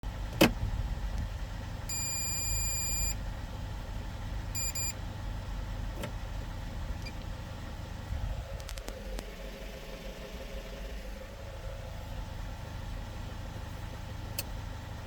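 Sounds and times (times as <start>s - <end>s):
excavator diesel engine idling: 0.1s - 15.0s
electronic beep: 1.9s - 3.2s, 4.6s - 4.9s
short double beep: 1.9s - 3.2s, 4.6s - 5.0s.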